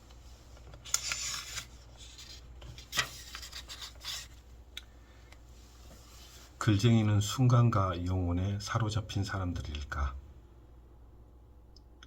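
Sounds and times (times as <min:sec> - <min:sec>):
book page rustling: 0:00.5 - 0:04.4.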